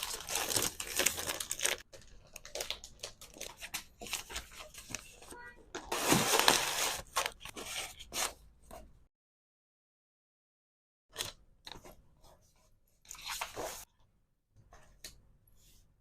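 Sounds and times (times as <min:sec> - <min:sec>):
crinkly plastic packaging scrapes: 0:00.0 - 0:05.1, 0:05.9 - 0:07.9.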